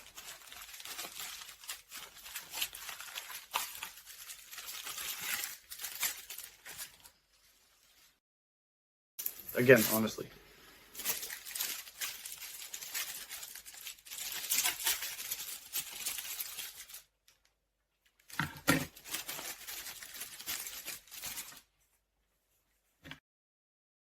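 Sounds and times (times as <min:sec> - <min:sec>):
packaging tearing and crinkling: 0:00.0 - 0:07.2, 0:10.9 - 0:17.2, 0:18.2 - 0:21.7.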